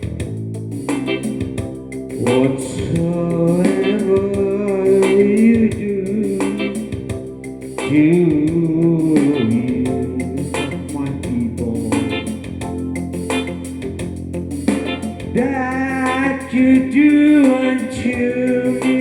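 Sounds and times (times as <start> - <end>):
guitar: 0.0 - 19.0
man singing a hymn: 2.3 - 6.6, 15.4 - 19.0.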